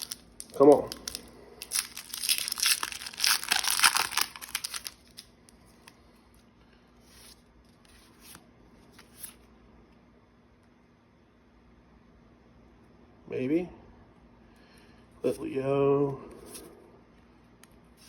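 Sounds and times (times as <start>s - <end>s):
foil wrapper tearing and crinkling: 0.0s - 5.3s
cards rustling: 0.0s - 9.5s.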